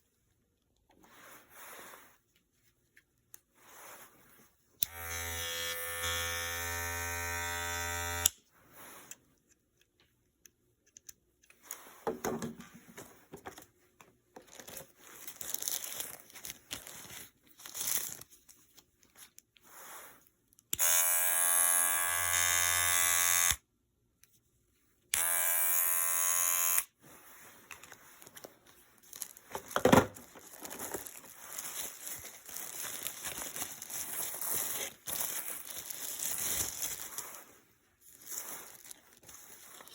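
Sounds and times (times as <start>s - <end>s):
rustling and handling noises: 0.0s - 4.8s, 8.4s - 20.7s, 26.9s - 39.9s
electric hair clippers buzzing: 4.8s - 8.4s, 20.8s - 23.6s, 25.2s - 26.9s.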